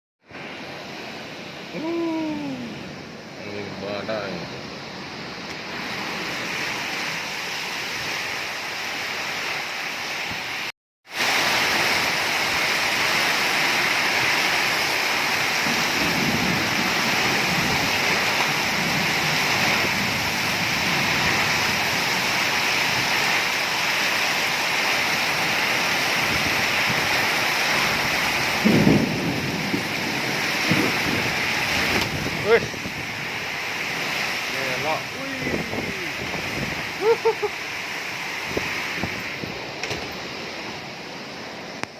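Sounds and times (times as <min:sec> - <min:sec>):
heavy rain pouring: 0:00.2 - 0:41.9
low rumbling surges: 0:28.0 - 0:41.9.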